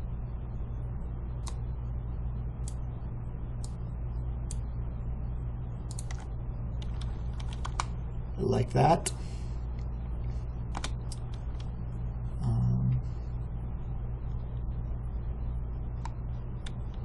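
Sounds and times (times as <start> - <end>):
low electrical hum: 0.0 - 17.0
keyboard and mouse clicks: 5.8 - 8.0, 10.7 - 11.7, 16.0 - 17.0.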